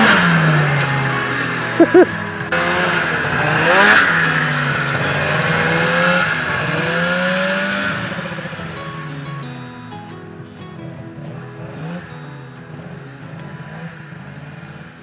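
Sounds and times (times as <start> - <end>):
small engine revving: 0.0 - 9.2.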